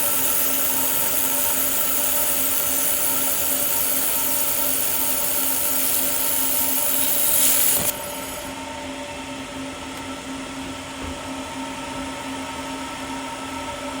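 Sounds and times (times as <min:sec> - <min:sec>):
laser weld hissing: 0:00.0 - 0:08.6
machine humming drone: 0:00.0 - 0:09.5.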